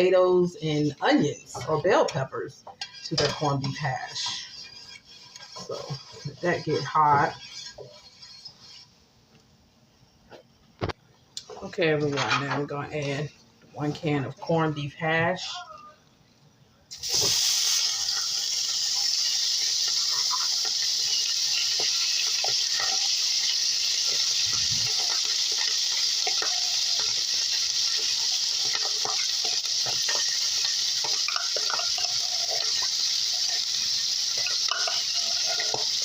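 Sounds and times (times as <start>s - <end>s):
food sizzling in frying pan: 0.0s - 9.0s, 16.9s - 36.0s.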